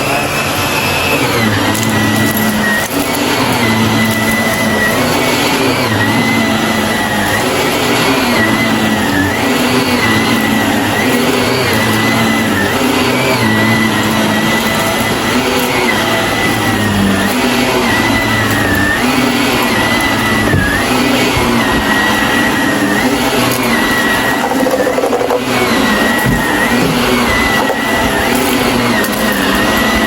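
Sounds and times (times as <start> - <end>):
vacuum cleaner motor whine: 0.0 - 30.0.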